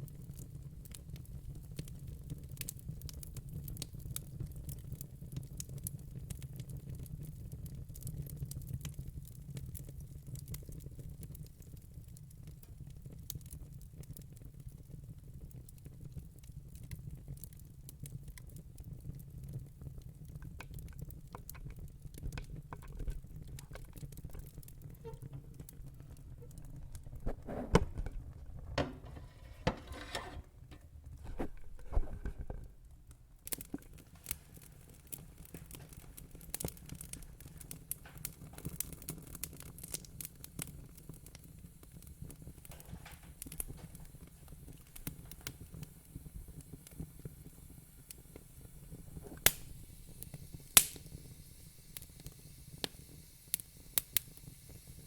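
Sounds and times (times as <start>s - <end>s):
wood fire crackling: 0.0s - 55.0s.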